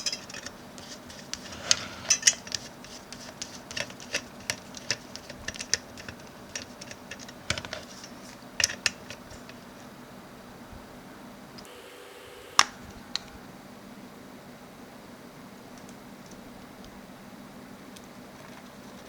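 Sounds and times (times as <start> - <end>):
small hard parts clicking and tapping: 0.0 - 9.8.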